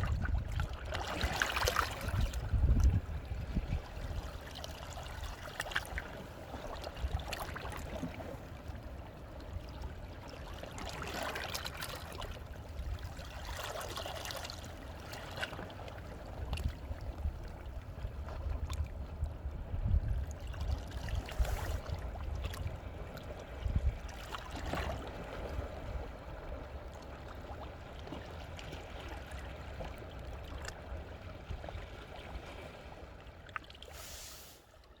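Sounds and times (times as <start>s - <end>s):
sea waves washing over rocks: 33.9s - 34.7s.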